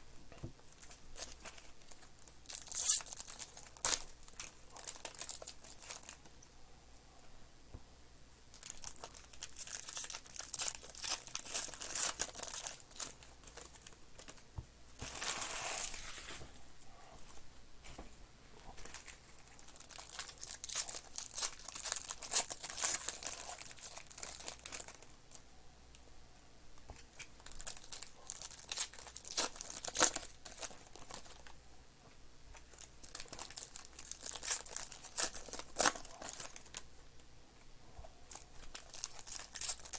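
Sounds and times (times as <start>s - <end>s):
plastic wrappers crinkling: 0.7s - 6.3s, 8.5s - 14.4s, 18.8s - 25.1s, 27.0s - 31.5s, 32.6s - 36.8s, 38.3s - 39.9s
wrapper tearing rip: 2.5s - 4.0s.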